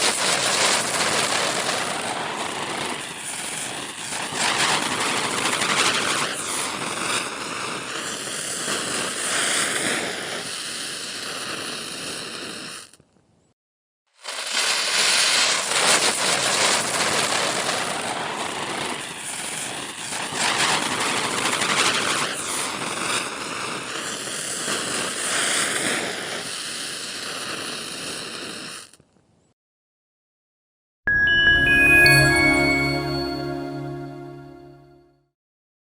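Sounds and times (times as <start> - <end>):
spinning firecracker fizzing: 0.0 - 13.0, 14.2 - 29.0.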